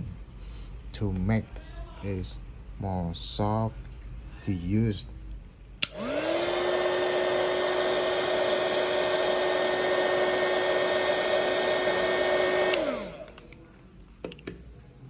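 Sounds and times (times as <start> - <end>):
hot air gun switch click: 5.8 - 6.2, 12.6 - 13.4
hot air gun fan whine: 5.8 - 13.5.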